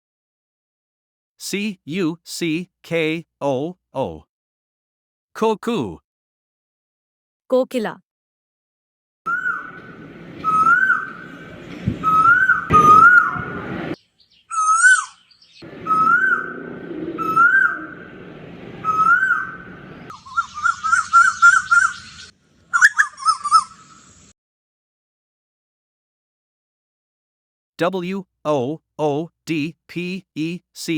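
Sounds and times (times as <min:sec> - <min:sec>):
cuckoo calling whistled notes: 0:10.4 - 0:11.2, 0:12.0 - 0:13.5, 0:15.8 - 0:16.5, 0:17.2 - 0:17.8, 0:18.8 - 0:19.5, 0:20.1 - 0:24.3.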